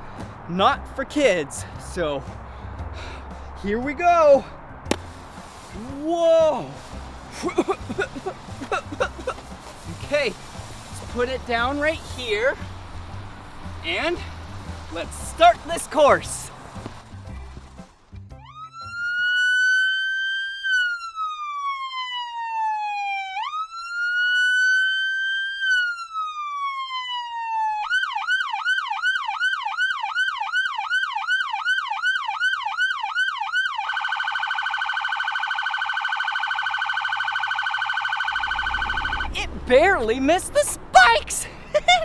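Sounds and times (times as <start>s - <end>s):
electronic police siren: 18.4s - 39.4s.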